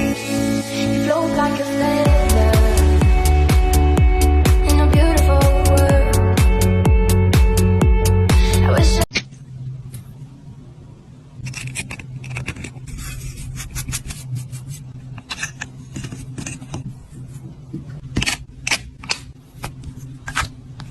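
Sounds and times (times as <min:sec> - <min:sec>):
steady low hum: 0:00.0 - 0:20.9
small objects clicking and scraping: 0:11.4 - 0:14.1.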